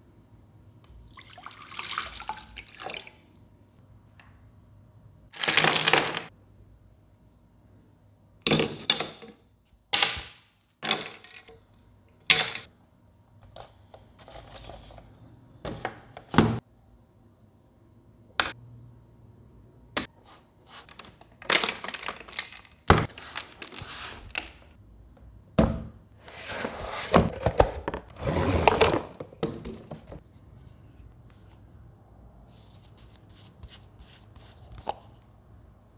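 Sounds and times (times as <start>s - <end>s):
scraping rustles: 20.2s - 24.8s.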